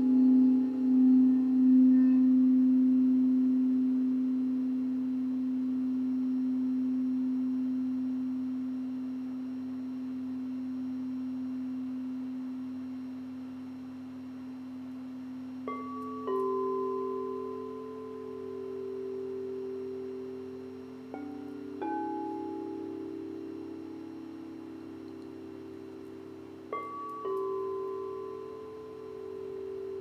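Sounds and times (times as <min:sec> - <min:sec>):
singing bowl ringing: 0:00.0 - 0:04.8, 0:15.6 - 0:30.0.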